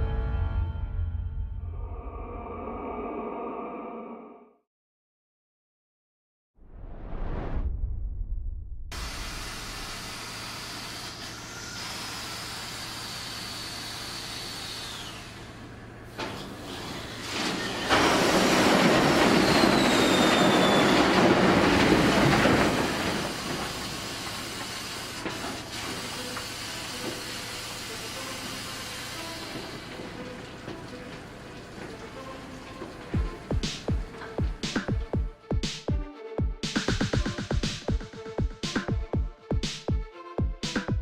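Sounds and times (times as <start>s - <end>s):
rushing air hiss: 8.9s - 11.5s
brakes squealing: 16.1s - 32.5s.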